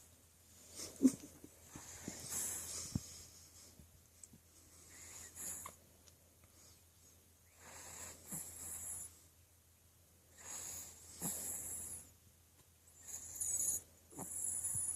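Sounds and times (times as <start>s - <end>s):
dog snoring with whistling note: 13.0s - 14.9s.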